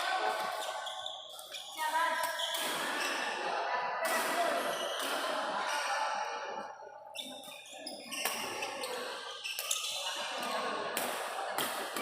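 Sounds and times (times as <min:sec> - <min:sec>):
hubbub of a large hall: 0:00.0 - 0:12.0.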